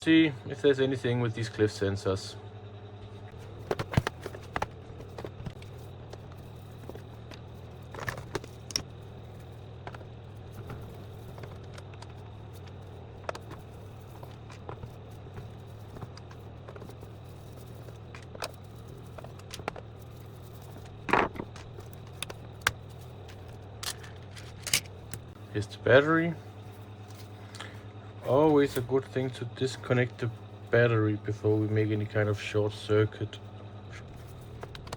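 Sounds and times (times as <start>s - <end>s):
low steady hum: 0.0s - 34.9s
plastic parts clicking and scraping: 3.3s - 25.4s, 34.0s - 34.9s.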